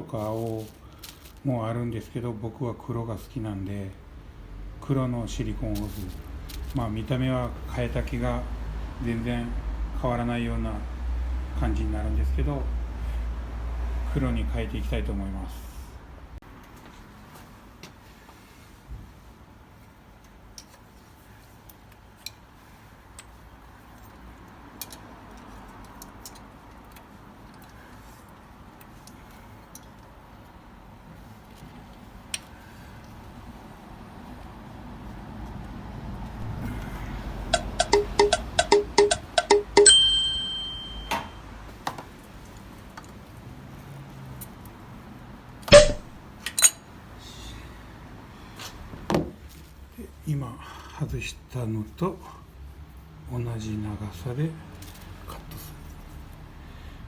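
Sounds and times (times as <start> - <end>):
quick struck notes: 37.5 - 40.4, 45.7 - 46.2
bright bell-like ding: 37.6 - 41.4, 45.7 - 46.1
small metallic clink: 39.8 - 41.4, 45.7 - 46.9.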